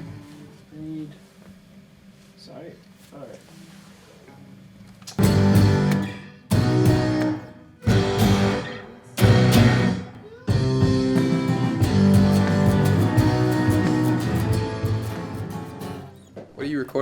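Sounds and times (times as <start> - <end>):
guitar chords ringing out: 5.2 - 16.2
guitar playing: 5.2 - 16.4.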